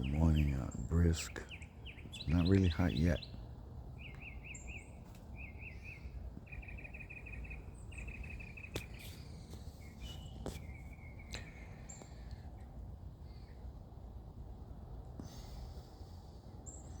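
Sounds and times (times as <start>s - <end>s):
low outdoor rumble: 0.0s - 17.0s
songbird chirping: 0.0s - 17.0s.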